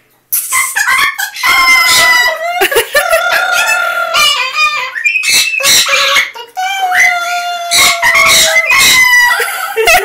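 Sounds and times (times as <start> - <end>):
parrots squawking: 0.3 - 10.0
parrot whistle-like calls: 3.6 - 9.4.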